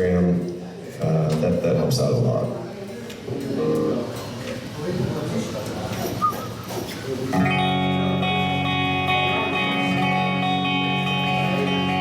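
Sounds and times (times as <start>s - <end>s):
low crowd chatter: 0.0s - 12.0s
electric guitar chord ringing: 7.4s - 12.0s.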